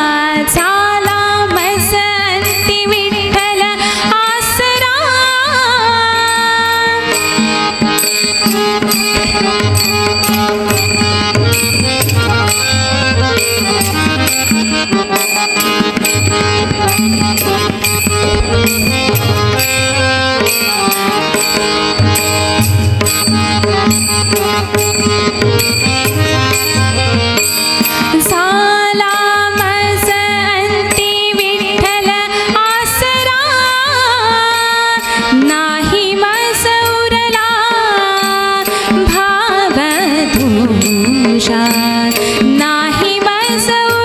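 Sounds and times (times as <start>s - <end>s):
held instrumental melody: 6.2s - 31.8s
drums and percussion beat: 6.2s - 33.3s, 35.0s - 44.0s.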